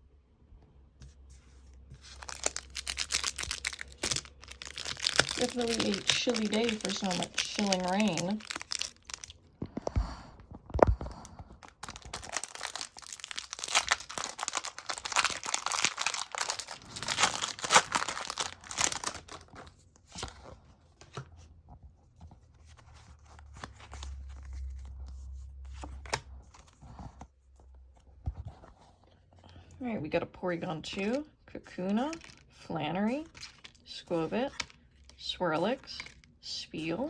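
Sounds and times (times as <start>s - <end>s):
cards rustling and clicking: 1.8s - 9.4s, 10.6s - 21.2s, 31.8s - 32.5s, 33.2s - 35.2s, 35.8s - 36.3s
foil wrapper tearing and crinkling: 2.0s - 9.4s, 11.6s - 19.6s.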